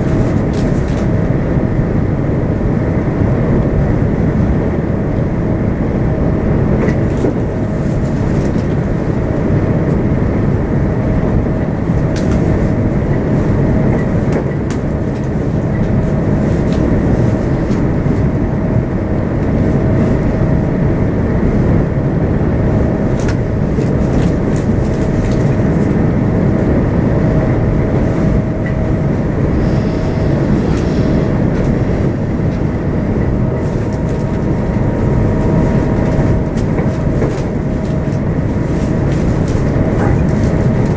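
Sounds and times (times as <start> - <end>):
electric train rumbling: 0.0 - 40.9
thin constant whine: 26.0 - 40.9.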